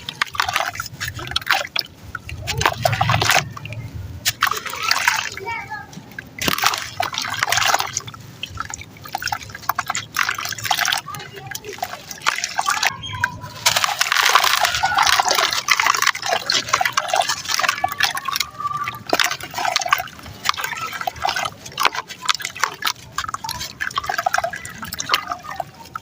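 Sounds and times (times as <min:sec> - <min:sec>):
cement crumbling in water: 0:06.3 - 0:26.0.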